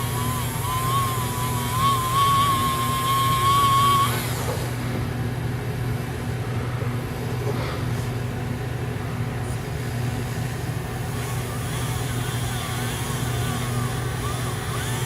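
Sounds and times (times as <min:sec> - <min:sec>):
high whine of tool on polishing wheel: 0:00.0 - 0:04.7, 0:11.0 - 0:15.0
low motor hum: 0:00.0 - 0:15.0.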